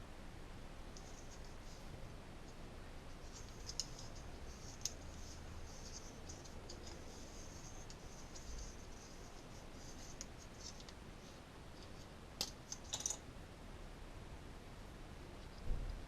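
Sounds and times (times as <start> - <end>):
scratching and rustling on pipe fittings: 0.9 - 13.2.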